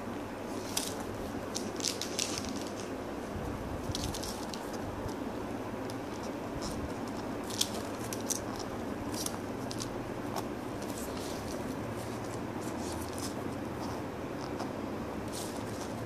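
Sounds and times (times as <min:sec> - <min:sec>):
hands handling objects: 0:00.5 - 0:03.0, 0:05.8 - 0:16.0.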